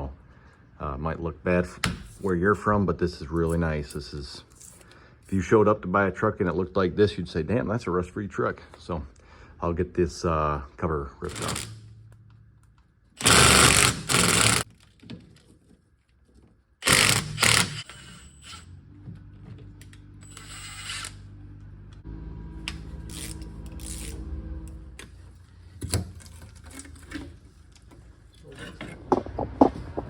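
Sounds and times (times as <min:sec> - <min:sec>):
steady mechanical hum: 0:00.0 - 0:14.7, 0:16.8 - 0:30.0
power tool bursts: 0:13.2 - 0:14.6, 0:16.8 - 0:18.7, 0:20.2 - 0:21.2.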